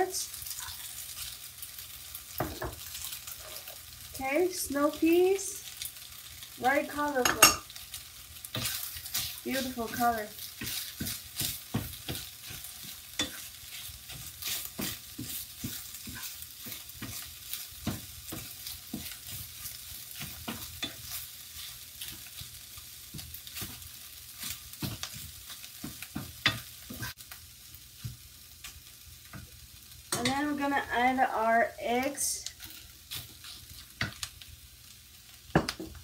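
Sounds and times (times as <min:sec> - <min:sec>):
food sizzling in hot oil: 0:00.0 - 0:36.0
utensil scraping and clicking on pan: 0:08.4 - 0:22.5.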